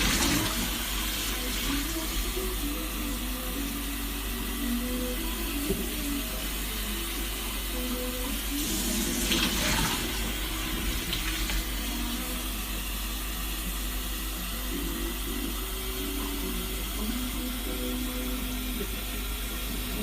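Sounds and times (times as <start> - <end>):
water running from a tap: 0.0 - 2.7, 8.5 - 12.2
faint radio music: 0.0 - 20.0.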